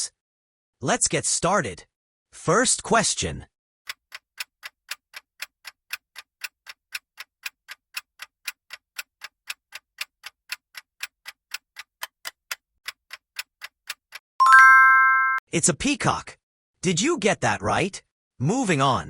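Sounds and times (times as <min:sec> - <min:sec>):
clock ticking: 0:03.9 - 0:14.2
bright chime: 0:14.4 - 0:15.4.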